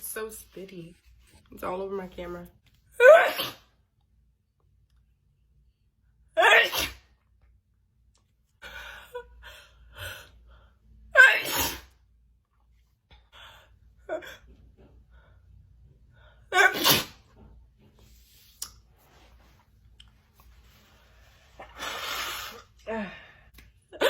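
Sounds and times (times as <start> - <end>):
woman sneezing: 3.0 - 3.7, 6.4 - 7.0, 11.2 - 11.9, 16.5 - 17.2.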